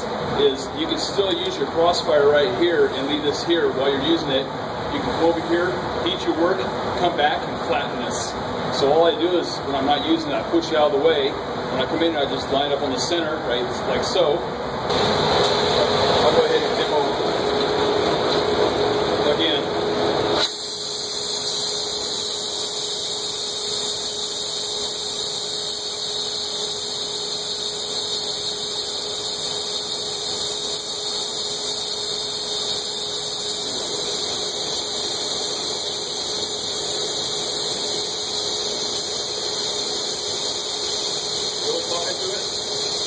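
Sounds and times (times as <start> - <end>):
steady hum: 0.0 - 43.0
burner flames hissing: 14.7 - 43.0.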